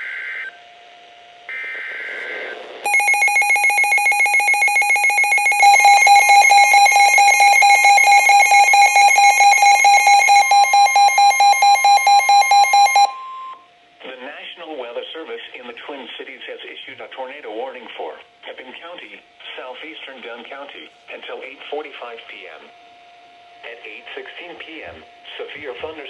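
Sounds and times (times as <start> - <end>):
buzzy data header burst: 2.9 - 13.2
two-tone alert signal: 2.9 - 13.6.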